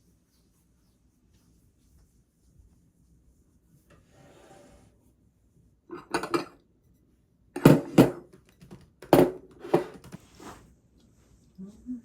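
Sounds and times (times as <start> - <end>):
dishes and cutlery clattering: 5.9 - 6.6.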